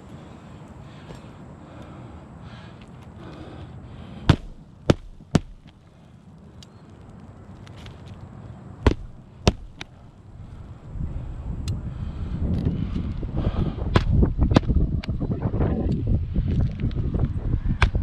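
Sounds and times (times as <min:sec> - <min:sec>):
hammer blows on shingle roof: 0:04.2 - 0:05.8, 0:08.8 - 0:09.9.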